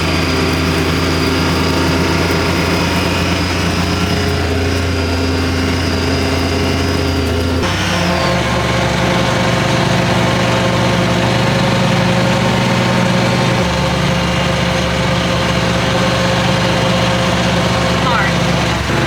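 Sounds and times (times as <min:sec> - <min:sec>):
car engine hum from inside cabin: 0:00.0 - 0:19.0
steady drivetrain whine: 0:00.0 - 0:19.0.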